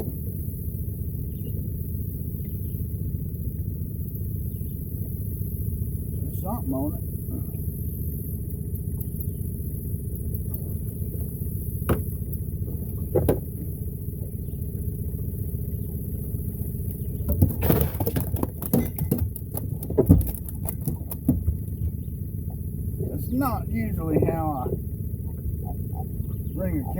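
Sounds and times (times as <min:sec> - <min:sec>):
boat motor idling: 0:00.0 - 0:26.9
knocks and rattles: 0:11.9 - 0:13.7, 0:17.2 - 0:22.0.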